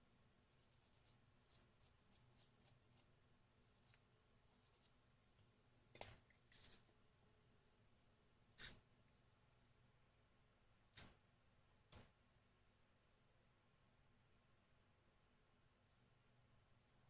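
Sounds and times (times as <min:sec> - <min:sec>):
scratchy strokes on small hardware: 0:00.5 - 0:03.1, 0:03.7 - 0:05.0.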